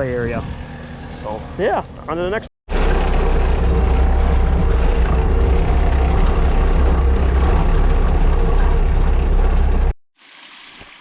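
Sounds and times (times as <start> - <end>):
skid steer engine running: 2.7 - 10.0.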